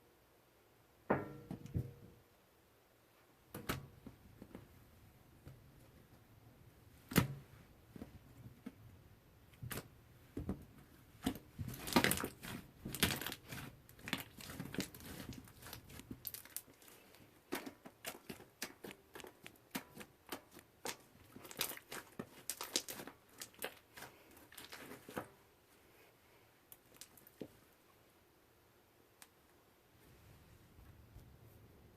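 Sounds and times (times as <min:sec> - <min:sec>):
slime crackling and popping: 0:11.2 - 0:25.3, 0:26.7 - 0:27.4.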